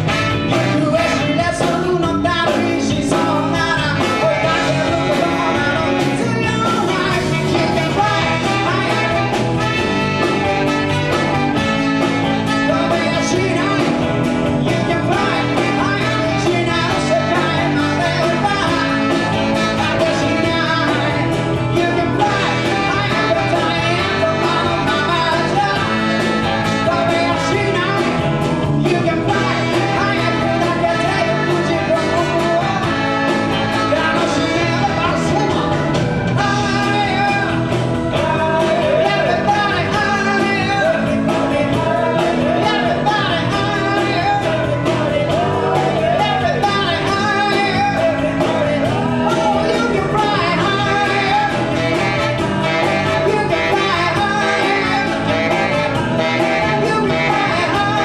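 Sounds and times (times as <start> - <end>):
electric guitar: 0.0 - 58.0
person singing: 0.0 - 58.0
rock band playing: 0.0 - 58.0.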